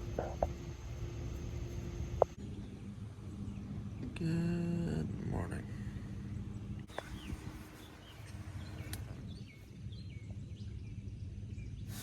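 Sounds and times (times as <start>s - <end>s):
steady low hum: 0.0s - 12.0s
birds chirping: 6.3s - 12.0s.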